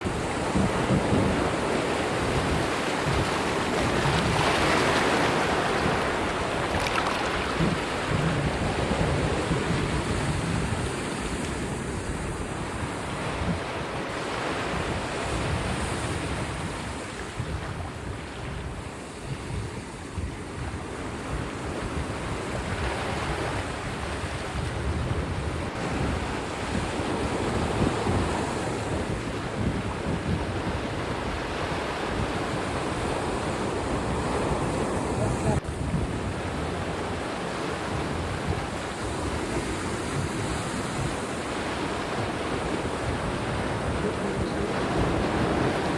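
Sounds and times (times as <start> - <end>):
sea waves breaking on beach: 0.0 - 45.9
wind buffeting microphone: 0.0 - 45.9.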